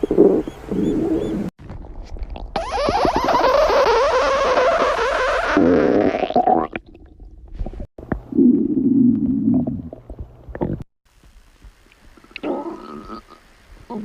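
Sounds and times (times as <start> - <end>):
stomach growling: 5.6 - 10.9, 12.0 - 13.4.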